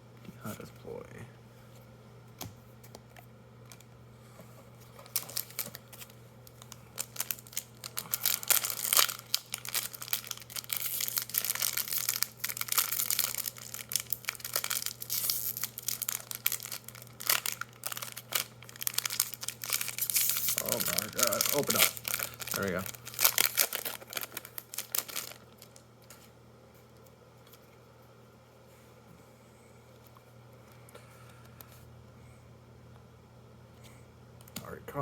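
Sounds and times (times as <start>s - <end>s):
foil wrapper crinkling and tearing: 4.8s - 26.3s.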